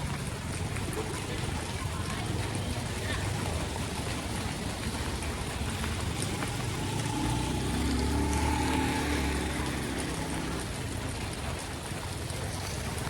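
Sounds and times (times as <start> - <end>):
heavy rain: 0.0 - 13.0
water rushing through drain: 0.0 - 13.0
engine passing by: 5.2 - 11.6.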